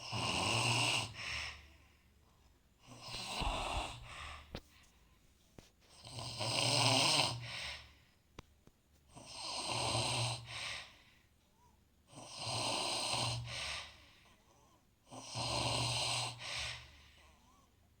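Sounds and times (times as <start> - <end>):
person snoring: 3.0 - 4.6.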